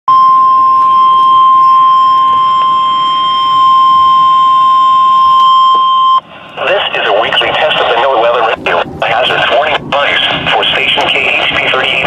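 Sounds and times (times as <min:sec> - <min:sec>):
steady alarm tone: 0:00.1 - 0:06.4.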